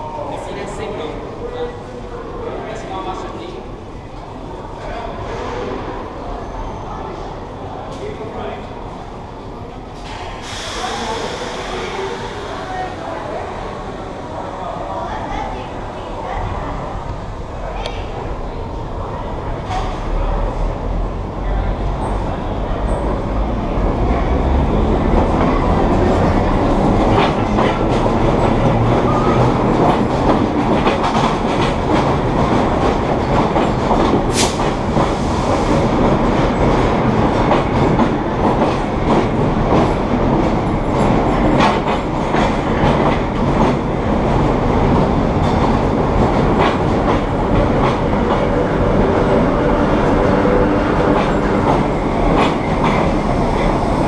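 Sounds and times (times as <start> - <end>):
subway train running: 0.0 - 54.0.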